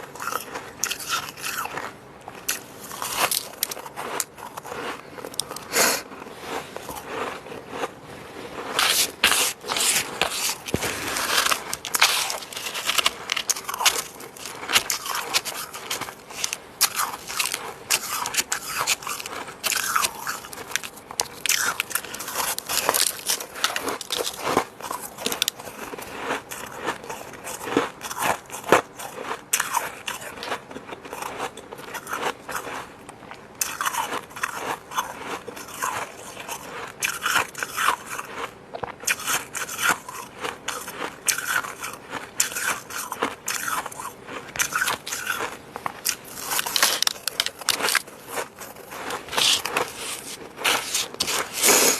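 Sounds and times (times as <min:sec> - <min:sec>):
frost being chewed crunching: 0:00.0 - 0:51.9.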